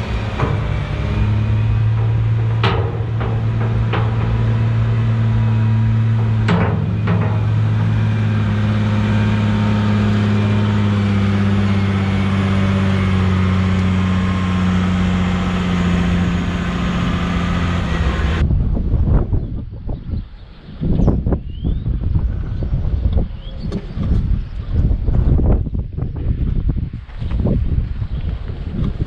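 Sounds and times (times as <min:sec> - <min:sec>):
tractor engine running: 0:00.0 - 0:18.4
wind noise on microphone: 0:00.0 - 0:29.0.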